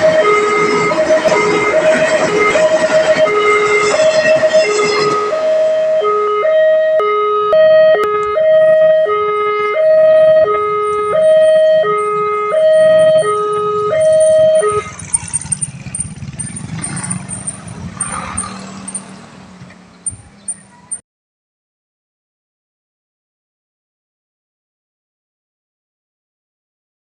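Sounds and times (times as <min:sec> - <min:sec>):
level crossing two-tone alarm: 0:00.0 - 0:19.1
low traffic hum: 0:00.0 - 0:21.0.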